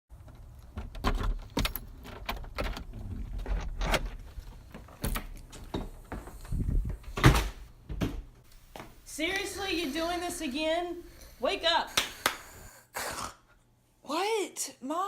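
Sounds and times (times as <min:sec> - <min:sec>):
door handled clicks and knocks: 0:00.2 - 0:04.2.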